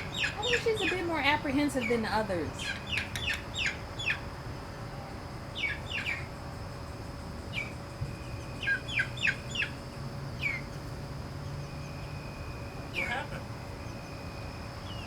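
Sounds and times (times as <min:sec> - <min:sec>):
young chickens peeping: 0:00.0 - 0:01.2, 0:01.8 - 0:04.3, 0:05.5 - 0:06.4, 0:07.5 - 0:11.0.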